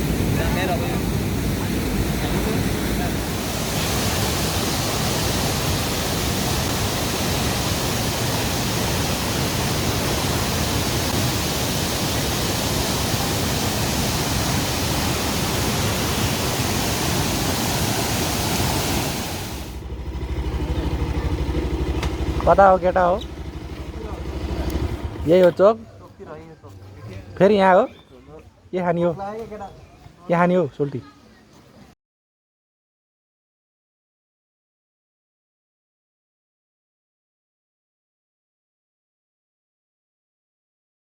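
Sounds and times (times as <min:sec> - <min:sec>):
waterfall rushing: 0:00.0 - 0:19.8.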